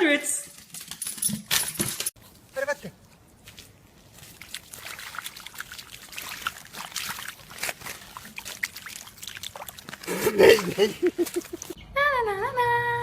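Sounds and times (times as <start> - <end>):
water trickling and splashing: 2.2 - 11.8.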